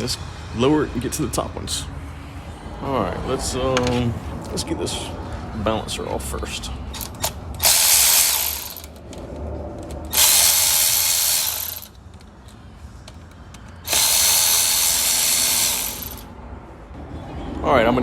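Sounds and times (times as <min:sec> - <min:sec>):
impact wrench bursts: 0:07.0 - 0:09.0, 0:10.1 - 0:12.0, 0:13.8 - 0:16.3.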